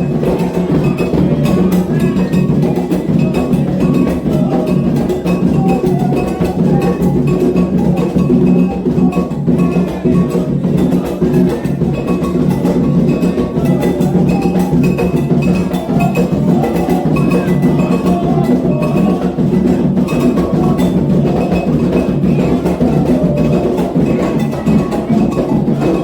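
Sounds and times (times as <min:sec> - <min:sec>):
hand drums: 0:00.0 - 0:26.0
metal bell ringing pattern: 0:00.0 - 0:26.0.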